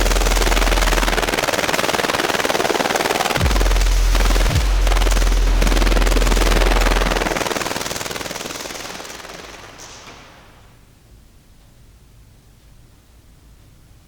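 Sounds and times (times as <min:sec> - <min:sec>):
deep low hum: 0:00.0 - 0:01.6, 0:03.4 - 0:07.5
firework crackling: 0:00.0 - 0:10.8.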